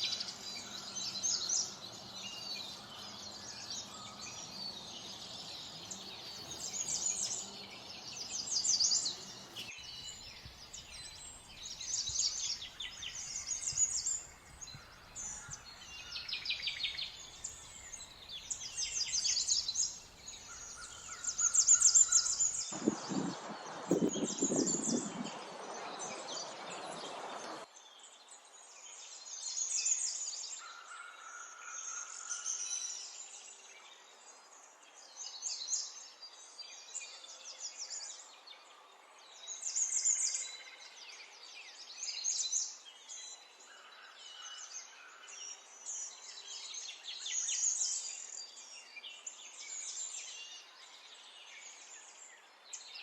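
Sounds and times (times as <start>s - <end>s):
songbirds chirping: 0.0s - 29.7s
loud rush of low noise: 22.6s - 27.7s.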